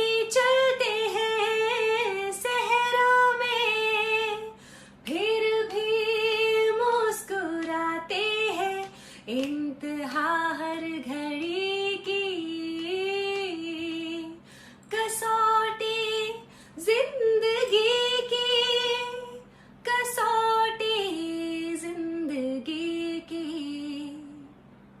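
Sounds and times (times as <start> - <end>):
woman singing: 0.0 - 24.6.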